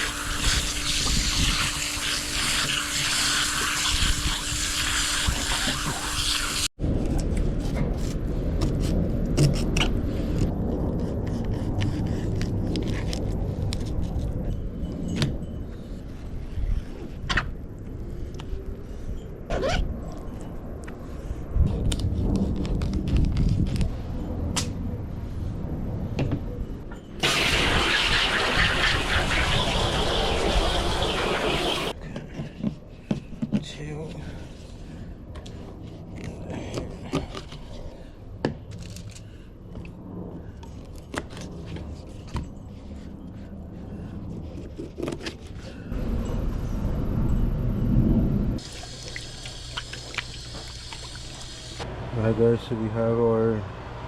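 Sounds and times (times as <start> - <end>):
water running from a tap: 0.0 - 6.7, 27.2 - 31.9, 48.6 - 51.8.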